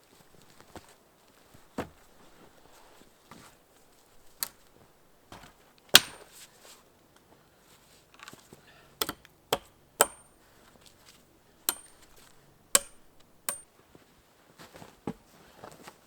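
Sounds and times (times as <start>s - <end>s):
chopping knocks on wood: 6.0s - 6.2s, 12.8s - 13.6s.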